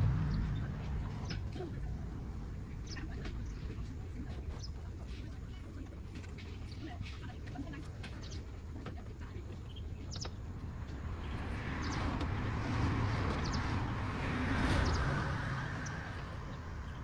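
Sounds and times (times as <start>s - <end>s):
vehicle passing by: 0.0s - 3.1s, 10.5s - 17.0s
bird chirps: 9.2s - 10.5s.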